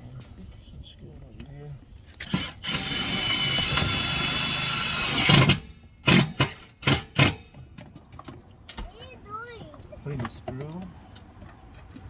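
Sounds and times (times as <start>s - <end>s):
power drill driving screw: 2.2s - 7.4s.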